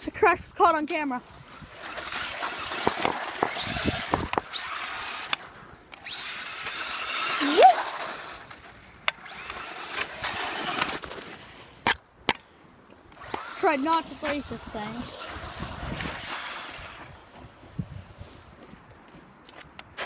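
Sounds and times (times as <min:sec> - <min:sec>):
tyre and ground noise: 0:00.0 - 0:20.0
remote-control truck motor whining: 0:01.5 - 0:11.2, 0:13.1 - 0:17.4.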